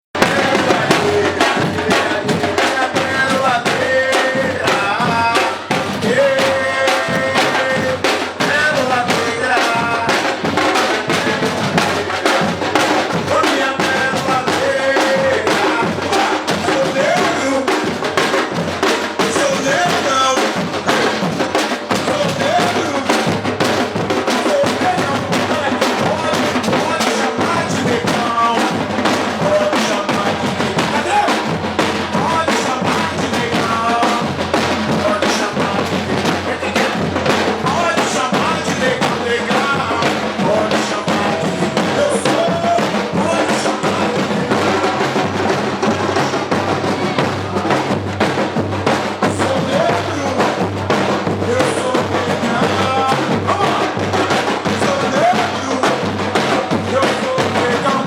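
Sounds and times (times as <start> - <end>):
voices over drums: 0.0 - 58.0
drum ensemble playing: 0.1 - 58.0.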